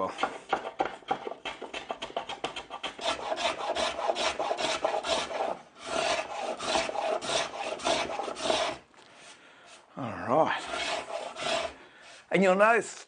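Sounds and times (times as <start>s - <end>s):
hand tool cutting wood: 0.0s - 8.8s, 10.6s - 11.8s.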